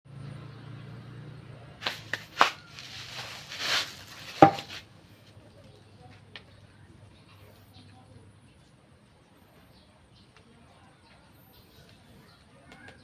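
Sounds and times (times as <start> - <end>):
short scraping rush: 1.8 - 4.9.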